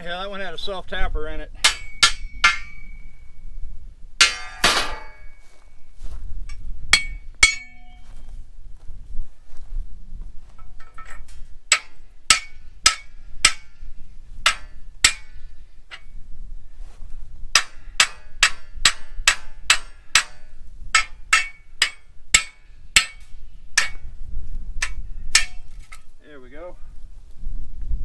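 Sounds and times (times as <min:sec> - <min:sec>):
hammer striking metal: 0:01.6 - 0:03.1, 0:04.2 - 0:05.4, 0:07.0 - 0:08.2, 0:10.9 - 0:13.9, 0:14.5 - 0:16.0, 0:17.6 - 0:24.1, 0:24.8 - 0:25.7.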